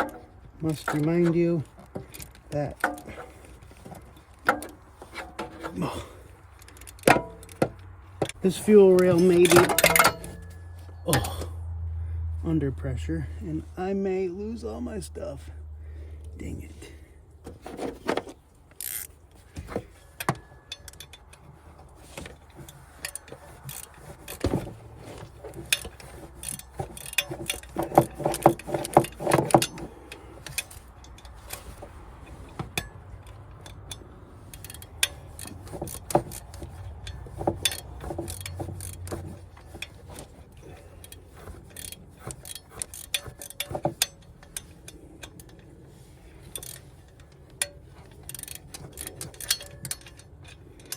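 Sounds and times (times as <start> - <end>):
metal hand tools clanking: 0.0 - 11.5, 22.4 - 31.7, 46.4 - 50.9.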